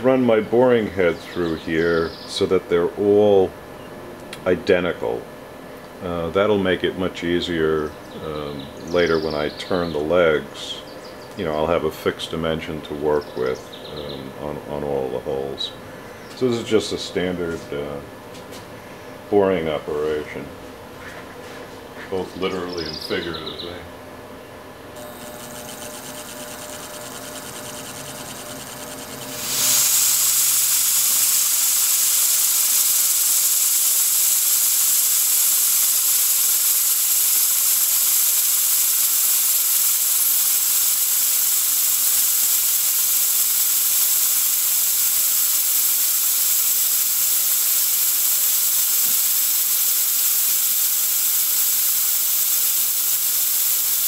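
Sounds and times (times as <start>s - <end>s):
milling machine humming: 24.9s - 54.0s
coolant sprayer hissing: 25.0s - 54.0s.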